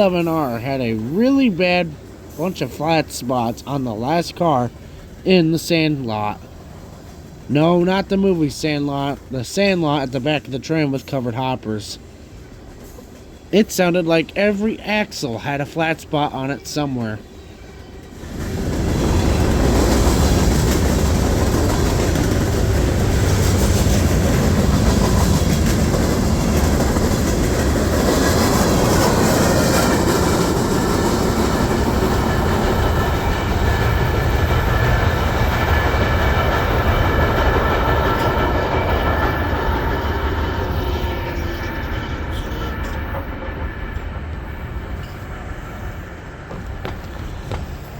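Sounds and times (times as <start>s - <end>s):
freight train rolling past: 0.0s - 47.9s
high wheel squeal: 37.9s - 45.9s
wheel flat spots thumping: 46.4s - 47.9s.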